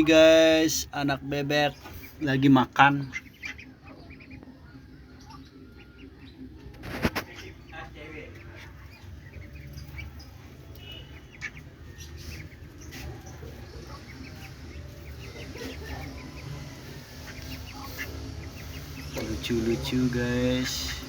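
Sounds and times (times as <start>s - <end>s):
ducklings peeping: 0.0s - 21.0s.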